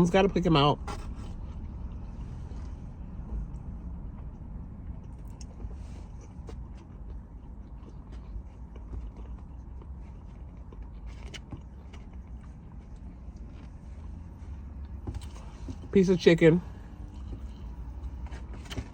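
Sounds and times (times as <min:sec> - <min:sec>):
person chewing and biting: 0:03.6 - 0:15.8.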